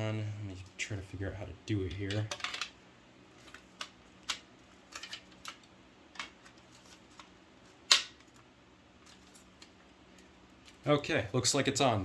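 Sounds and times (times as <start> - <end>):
plastic cover snapping: 7.9 - 8.4.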